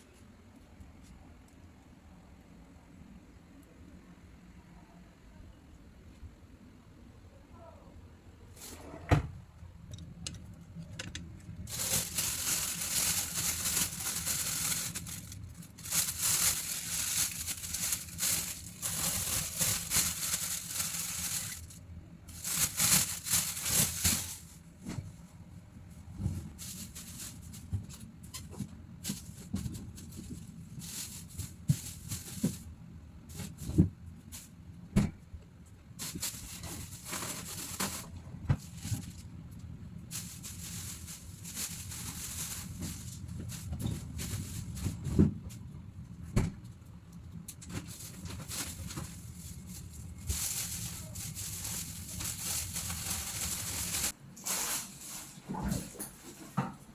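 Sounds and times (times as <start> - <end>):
plastic bags rustling: 8.5 - 25.2, 26.0 - 32.7, 36.0 - 45.4, 47.6 - 56.6
items tapping and knocking: 9.0 - 11.5.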